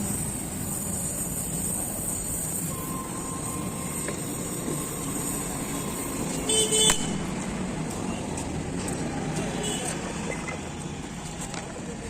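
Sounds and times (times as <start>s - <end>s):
street traffic noise: 0.0s - 12.0s
vehicle horn honk: 6.4s - 7.2s, 9.6s - 9.9s.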